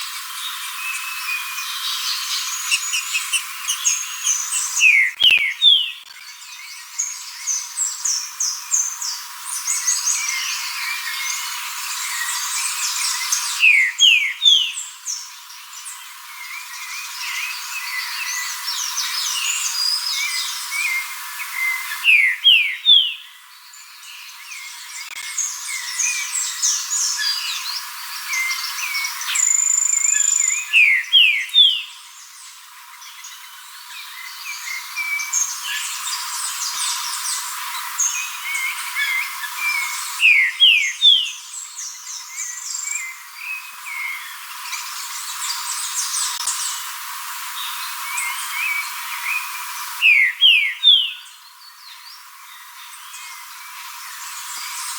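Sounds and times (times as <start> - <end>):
small birds chirping: 0.0 - 54.9
bird whistled song: 0.4 - 15.3, 16.4 - 32.4, 34.0 - 46.7, 47.6 - 53.5
bird whistling: 1.6 - 6.0.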